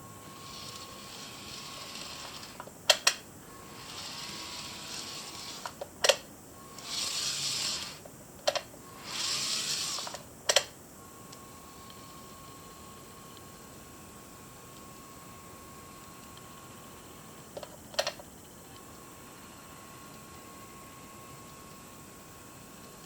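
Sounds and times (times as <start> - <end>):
model train motor running: 0.2 - 2.7, 3.6 - 5.8, 6.8 - 8.0, 9.0 - 10.2.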